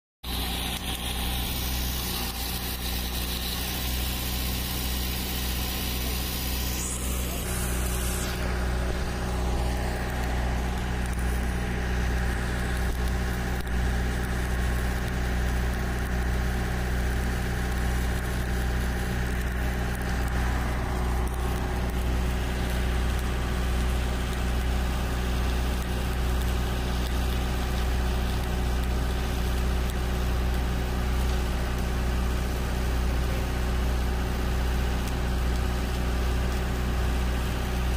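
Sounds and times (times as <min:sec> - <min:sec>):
high hiss: 0:00.2 - 0:13.6
engine droning: 0:00.2 - 0:37.9.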